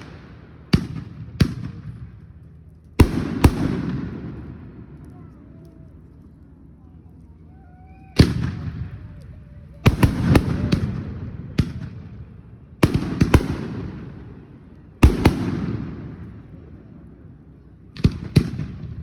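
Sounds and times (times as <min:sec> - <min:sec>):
fireworks booming: 0:00.0 - 0:05.3, 0:08.2 - 0:17.2
fireworks crackling: 0:00.0 - 0:19.0.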